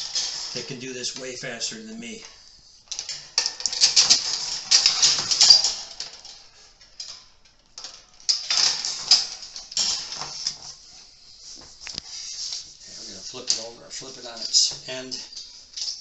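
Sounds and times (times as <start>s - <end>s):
metal bolts and washers rattling: 2.2s - 10.7s.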